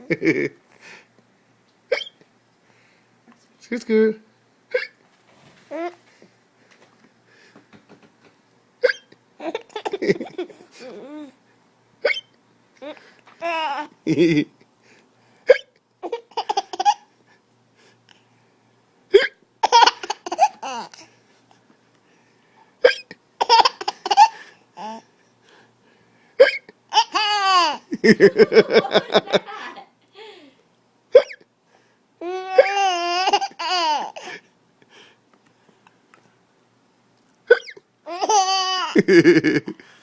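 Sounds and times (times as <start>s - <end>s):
man hiccuping: 1.9s - 2.2s, 4.7s - 5.0s, 8.8s - 9.1s, 12.1s - 12.3s, 22.8s - 23.1s, 26.4s - 26.7s, 31.2s - 31.4s, 37.5s - 37.8s
baby laughing: 8.8s - 11.4s, 12.0s - 14.4s, 15.5s - 17.1s, 19.1s - 21.1s, 22.8s - 25.0s, 26.4s - 29.8s, 32.2s - 34.3s, 37.5s - 39.6s.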